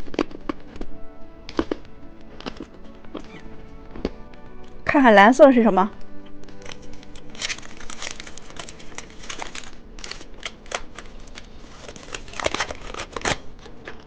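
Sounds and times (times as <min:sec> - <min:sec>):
plastic wrapper crinkling: 0:06.2 - 0:14.0.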